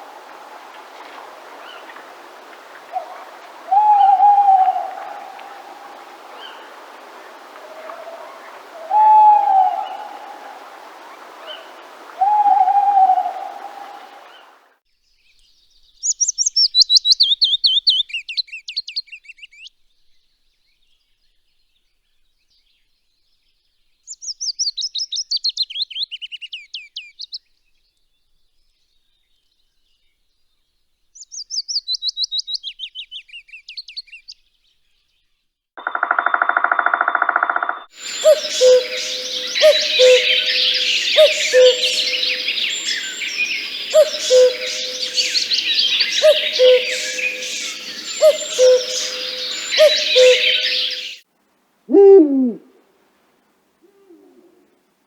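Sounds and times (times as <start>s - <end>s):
songbird singing: 0.0s - 14.6s, 35.8s - 51.2s.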